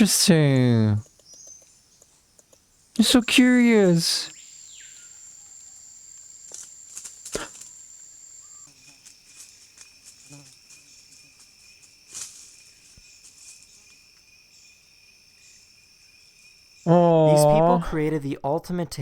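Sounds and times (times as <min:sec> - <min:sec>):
insects buzzing high-pitched: 0:00.8 - 0:17.0
faint clicks: 0:01.0 - 0:02.7.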